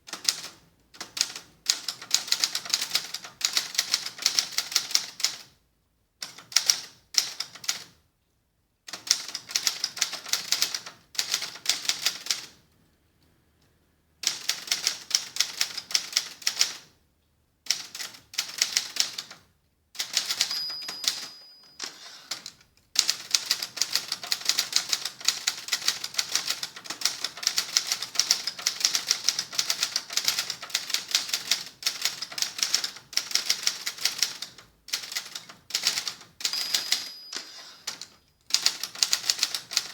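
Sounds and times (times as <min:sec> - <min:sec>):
manual typewriter typing: 0:00.1 - 0:05.5, 0:08.9 - 0:12.6, 0:14.2 - 0:16.9, 0:17.7 - 0:19.4, 0:20.0 - 0:39.9
typewriter bell ding: 0:20.2 - 0:22.3, 0:36.4 - 0:38.2.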